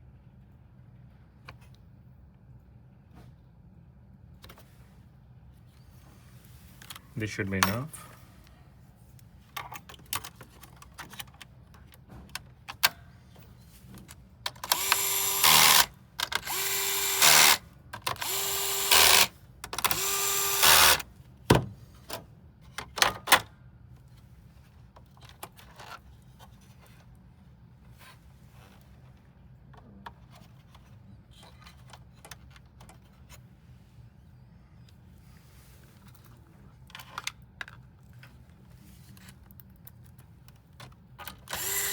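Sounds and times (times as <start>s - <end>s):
electric screwdriver running: 14.6s - 17.6s, 18.2s - 21.0s, 41.5s - 41.9s.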